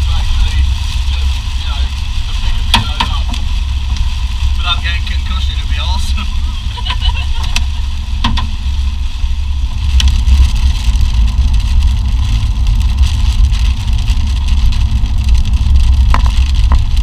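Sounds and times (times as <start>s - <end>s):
vehicle engine and road rumble: 0.0s - 17.0s.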